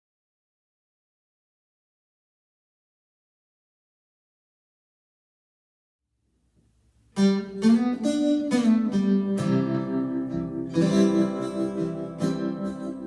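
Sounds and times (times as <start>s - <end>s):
acoustic guitar chords: 7.0s - 13.0s.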